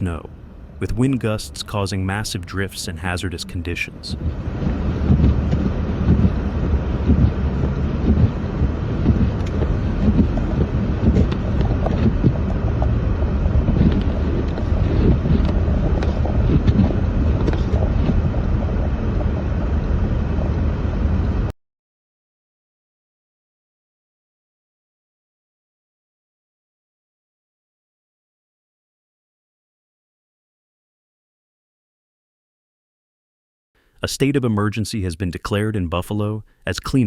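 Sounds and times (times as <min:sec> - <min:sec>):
wind buffeting microphone: 0:00.0 - 0:21.5.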